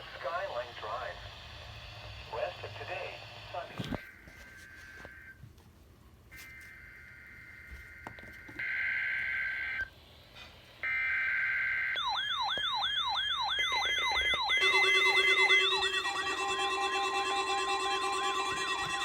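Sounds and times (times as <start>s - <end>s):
yelping siren alert tone: 10.9s - 19.0s
electronic beeping tones: 12.0s - 19.0s
two-tone data warble: 12.0s - 19.0s.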